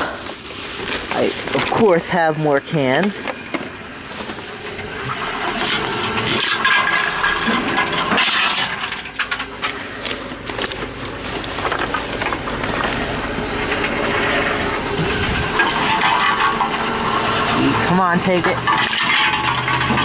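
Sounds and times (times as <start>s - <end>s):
aluminium cans clinking: 5.1s - 13.0s, 15.5s - 20.0s.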